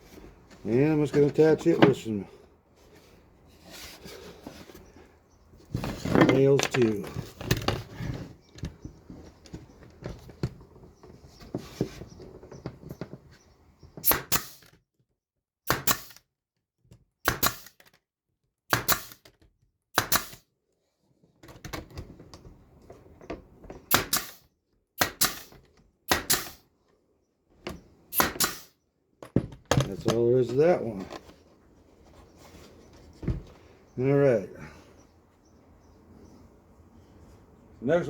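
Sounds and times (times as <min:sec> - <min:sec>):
faint handling clatter: 0:02.8 - 0:13.4
nail gun firing into wood: 0:14.0 - 0:14.8, 0:15.6 - 0:16.2, 0:17.2 - 0:17.9, 0:18.7 - 0:19.3, 0:20.0 - 0:20.4, 0:23.9 - 0:26.6, 0:28.1 - 0:28.8.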